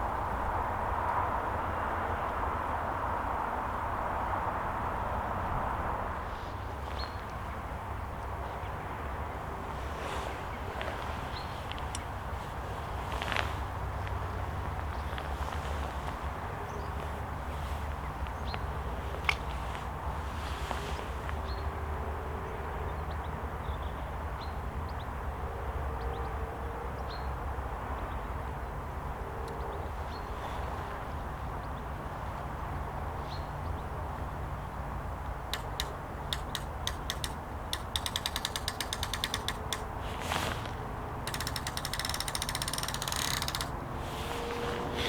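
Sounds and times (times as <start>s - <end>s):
fishing reel ratchet clicking: 35.6s - 40.0s, 41.3s - 43.8s.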